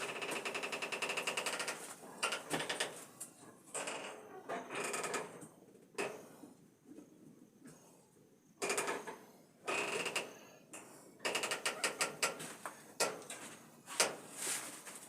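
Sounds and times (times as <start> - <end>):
scraping and rustling: 13.3 - 15.0.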